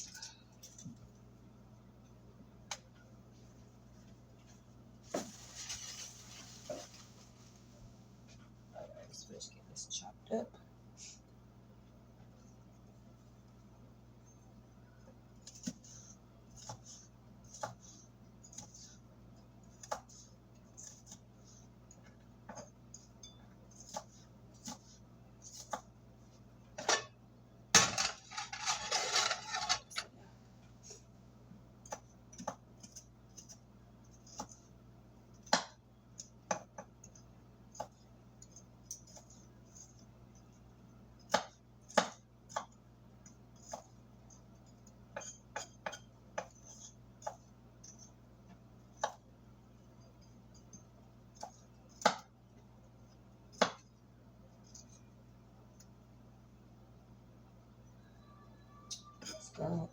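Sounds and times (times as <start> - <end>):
knife and dishes clinking: 27.8 - 30.1.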